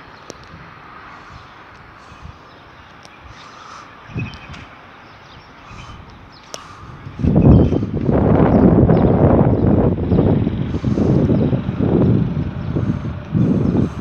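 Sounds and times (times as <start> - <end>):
wind gust buffeting microphone: 0.0 - 14.0
faint bird calls: 1.0 - 8.7.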